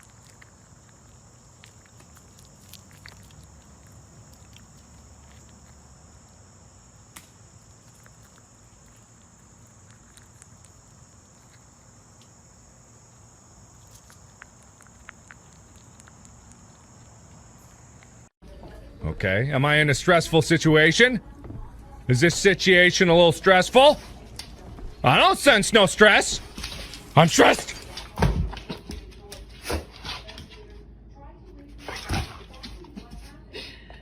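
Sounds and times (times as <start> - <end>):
insect trilling: 0.0 - 18.3.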